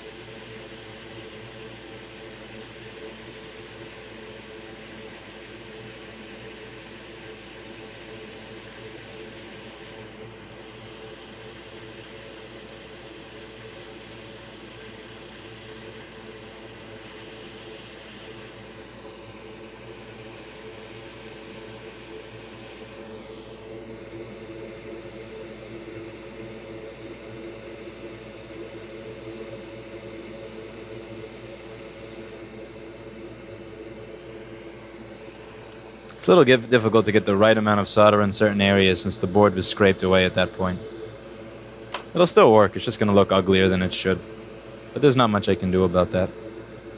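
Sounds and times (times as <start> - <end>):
electric blower whirring: 41.7 - 43.2.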